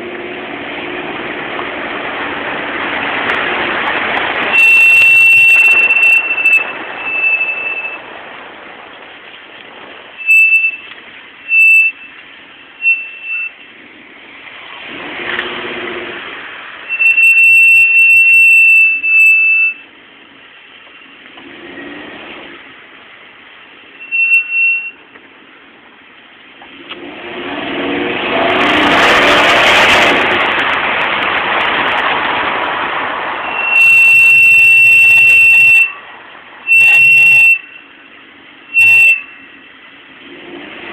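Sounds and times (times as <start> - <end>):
brakes squealing: 0.0 - 40.9
road noise: 0.0 - 40.9.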